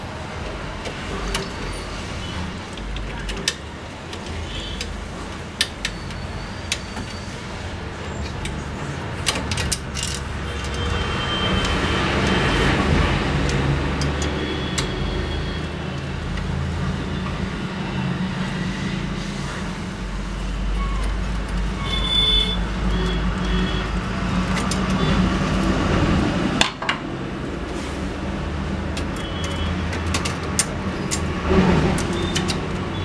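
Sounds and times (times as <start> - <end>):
road traffic rumbling: 0.0 - 33.0
tools being handled clicks: 9.2 - 10.9.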